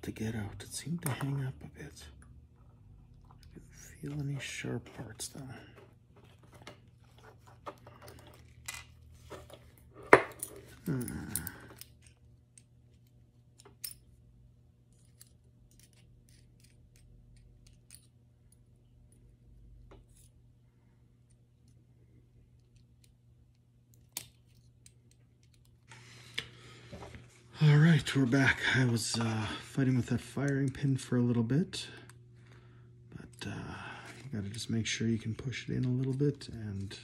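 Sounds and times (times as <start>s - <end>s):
small metal parts clicking: 10.3s - 14.1s, 14.9s - 19.2s.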